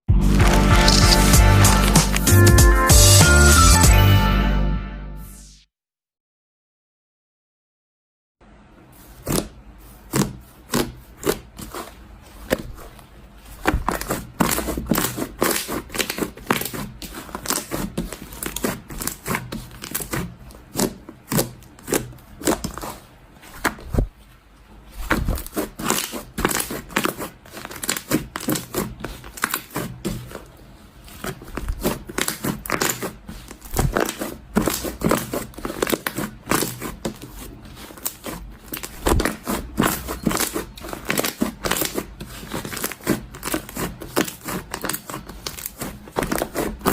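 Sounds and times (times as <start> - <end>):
slime squished by hand: 9.1 - 24.1, 24.9 - 46.9.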